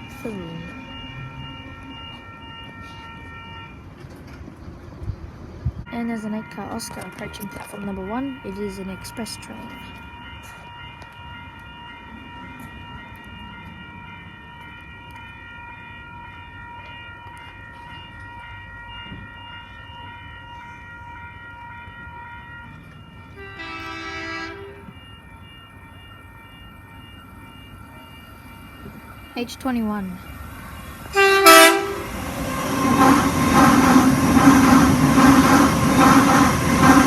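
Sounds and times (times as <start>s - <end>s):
electric train rumbling and whining: 0.0s - 37.0s
train horn blast: 23.4s - 25.1s, 31.1s - 37.0s.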